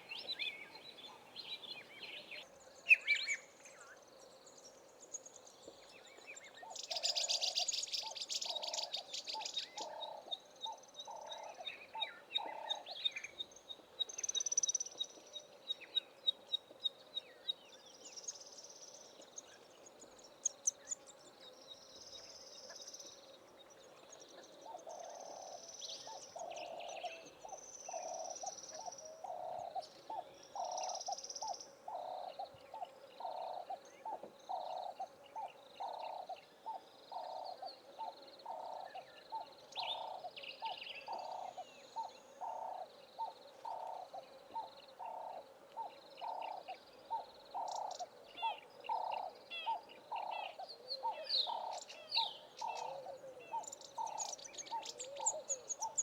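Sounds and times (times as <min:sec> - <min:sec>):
bird low hooting: 0:24.6 - 0:56.0.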